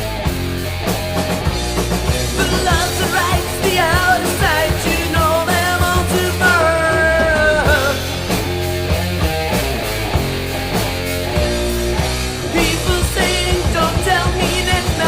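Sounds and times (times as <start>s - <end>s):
rock music with drums: 0.0s - 15.0s
person singing: 2.2s - 8.2s, 12.5s - 15.0s.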